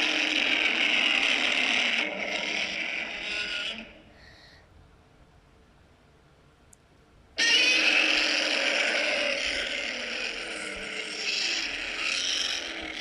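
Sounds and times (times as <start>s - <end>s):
monster roar: 0.0s - 4.0s, 7.4s - 13.0s.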